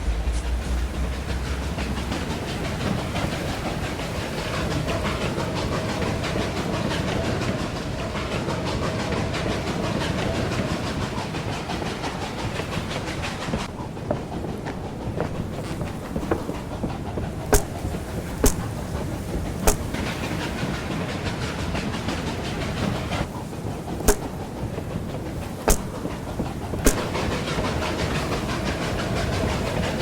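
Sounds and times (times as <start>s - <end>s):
low rumble: 0.0s - 2.6s
steam hissing: 0.0s - 30.0s
wheels clacking over rail joints: 0.0s - 30.0s.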